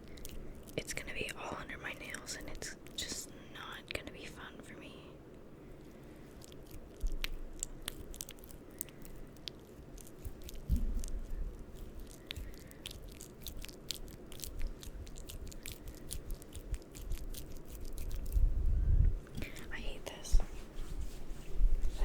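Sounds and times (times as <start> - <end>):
low thumps: 10.6 - 11.6.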